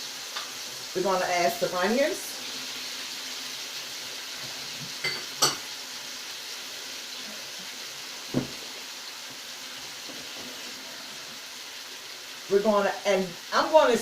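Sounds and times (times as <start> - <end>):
food sizzling in hot oil: 0.0 - 14.0
dull knock: 8.3 - 8.6.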